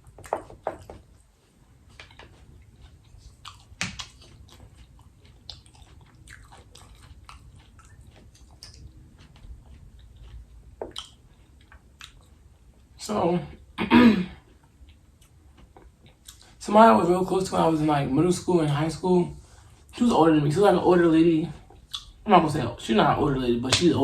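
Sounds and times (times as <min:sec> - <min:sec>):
person biting and chewing food: 0:00.0 - 0:12.7
wet mouth clicks: 0:02.9 - 0:12.3, 0:21.8 - 0:22.2.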